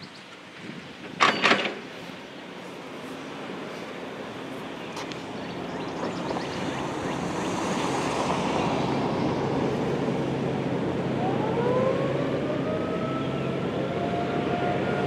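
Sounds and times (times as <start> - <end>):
warning sirens winding up: 10.7 - 15.0.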